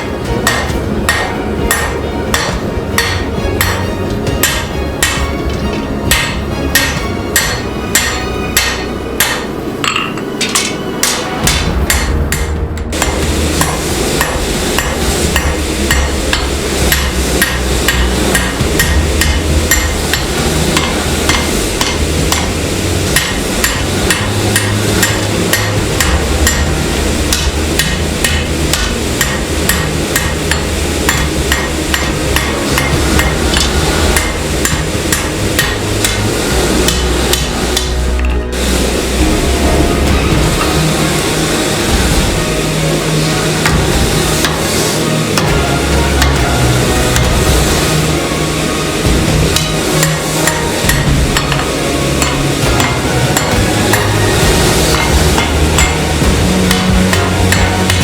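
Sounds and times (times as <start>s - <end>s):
hammer striking steel: 0.0s - 48.4s, 49.0s - 58.0s
low hum: 0.0s - 58.0s.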